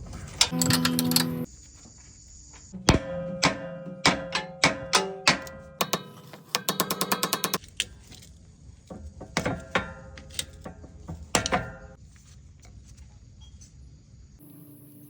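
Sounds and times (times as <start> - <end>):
metallic knocks: 0.4 - 1.5, 2.8 - 7.6, 8.9 - 12.0
rapid ratcheting clicks: 5.8 - 7.8.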